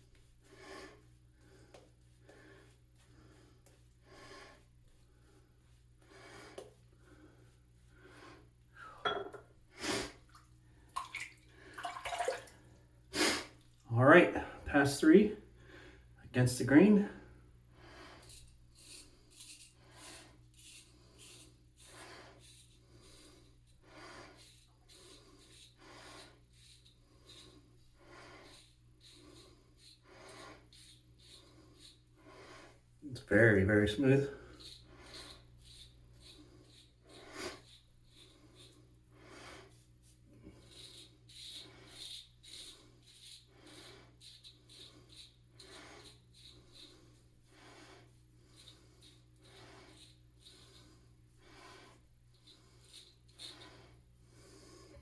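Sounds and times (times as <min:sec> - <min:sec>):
person sniffing and breathing: 0:00.4 - 0:09.0, 0:09.7 - 0:10.3, 0:17.3 - 0:33.0, 0:34.4 - 0:55.0
light water sounds: 0:10.2 - 0:12.7
razor scraping stubble: 0:18.2 - 0:39.0.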